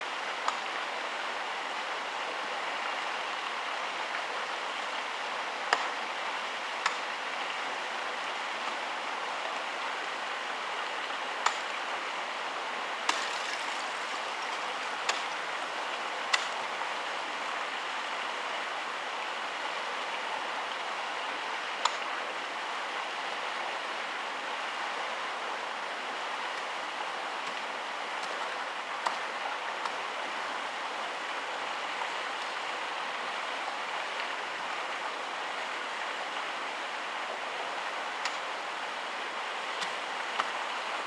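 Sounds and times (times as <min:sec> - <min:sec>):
ice axes striking ice: 0:13.1 - 0:13.9, 0:15.0 - 0:15.3.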